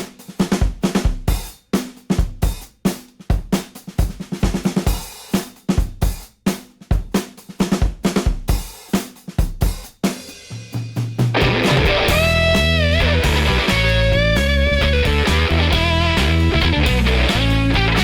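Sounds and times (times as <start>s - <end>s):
rock drum kit: 0.0s - 18.0s
bass: 11.3s - 18.0s
electric guitar: 11.4s - 18.0s.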